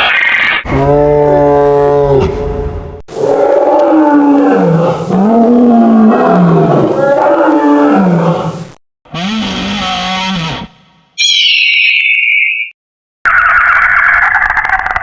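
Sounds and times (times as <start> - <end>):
deep dinosaur roar: 0.7 - 8.8.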